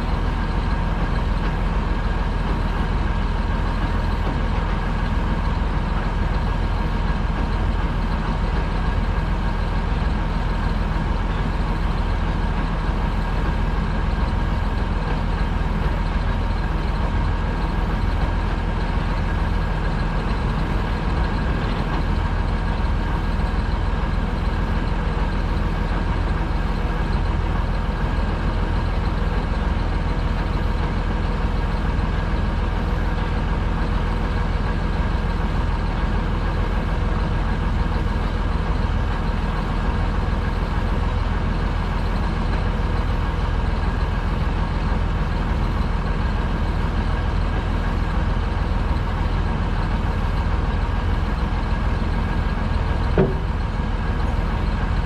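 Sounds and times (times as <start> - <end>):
farm machinery engine running: 0.0 - 55.0
steady whine: 52.8 - 55.0.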